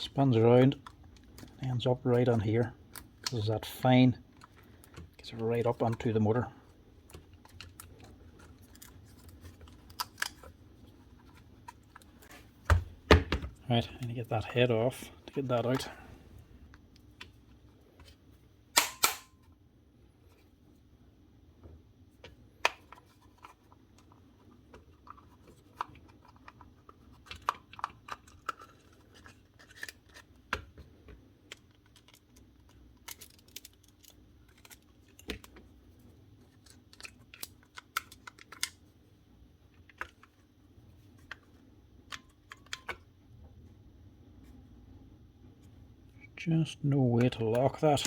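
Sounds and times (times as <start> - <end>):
tools and plastic parts clicking: 7.0 - 10.6, 22.2 - 30.7, 31.4 - 35.7, 36.4 - 38.8, 41.2 - 43.1.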